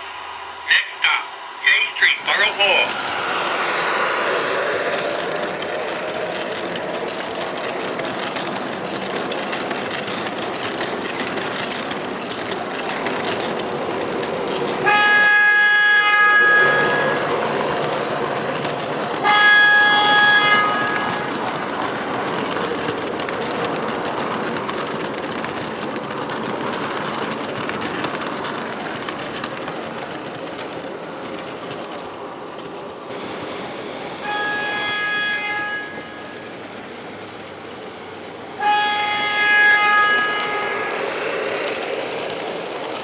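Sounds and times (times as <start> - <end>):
model train rolling noise: 0.0 - 43.0
train horn blasts: 14.8 - 17.4, 19.2 - 21.4, 34.2 - 36.4, 38.6 - 41.0.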